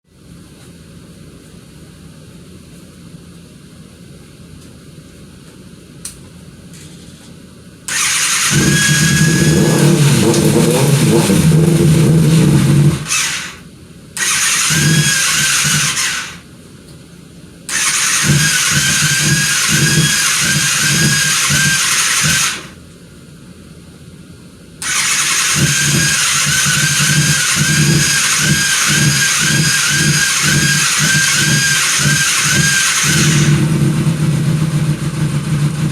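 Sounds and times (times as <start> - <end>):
motorcycle electric starter cranking: 7.9 - 13.6, 14.2 - 16.4, 17.7 - 22.8, 24.8 - 35.9.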